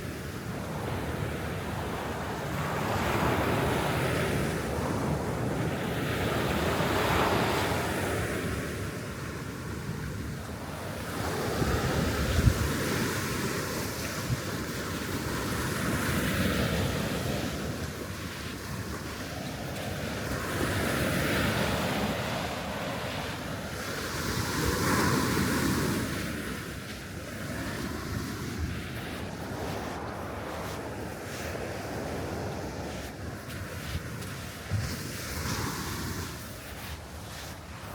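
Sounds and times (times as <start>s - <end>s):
surf breaking on a beach: 0.0s - 37.9s
wind buffeting the microphone: 0.0s - 37.9s.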